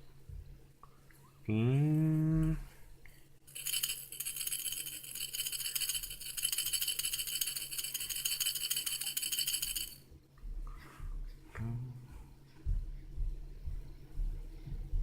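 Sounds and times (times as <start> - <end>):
baby's rattle toy shaken: 3.5 - 10.0.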